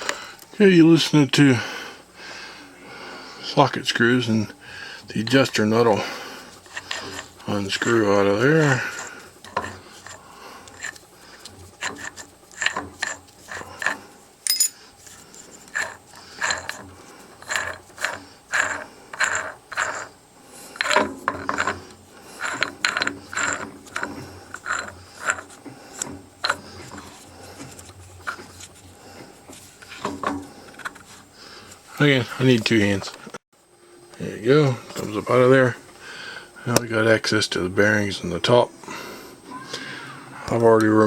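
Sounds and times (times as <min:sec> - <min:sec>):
metallic clicking and scraping: 0:06.6 - 0:20.1, 0:20.7 - 0:31.8.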